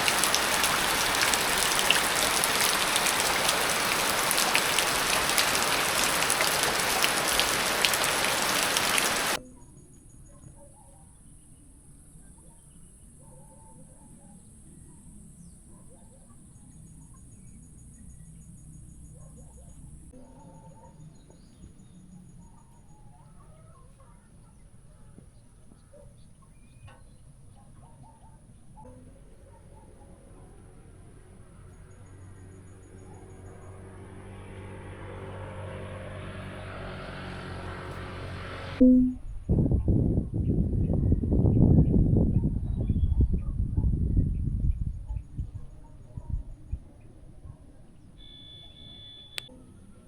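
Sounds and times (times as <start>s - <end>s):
steady rain falling: 0.0s - 9.4s
faint bird chirps: 48.0s - 49.7s.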